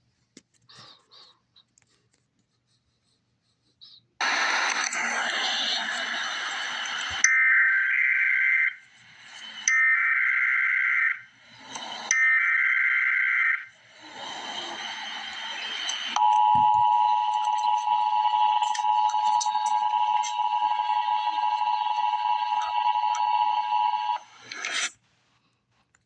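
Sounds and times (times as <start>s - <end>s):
screeching digital data tones: 4.2s - 24.9s
two-tone attention signal: 14.5s - 24.3s.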